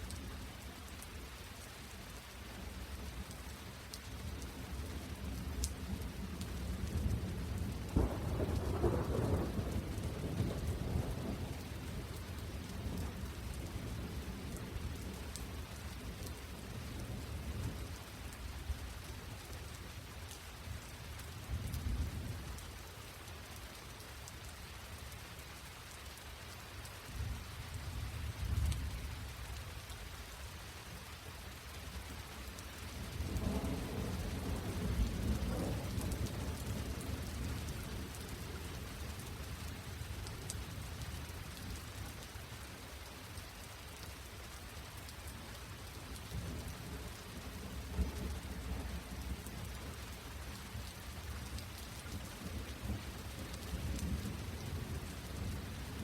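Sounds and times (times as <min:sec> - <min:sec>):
steady rain falling: 0:00.0 - 0:56.0
rolling thunder: 0:07.9 - 0:11.4, 0:33.2 - 0:37.5.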